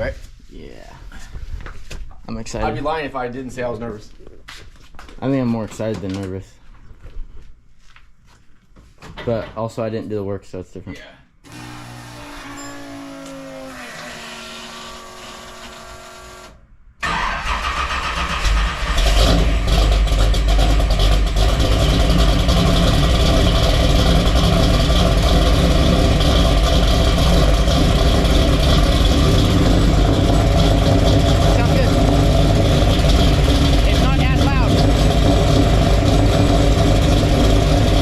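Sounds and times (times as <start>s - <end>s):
car engine starting and running: 11.5s - 38.0s.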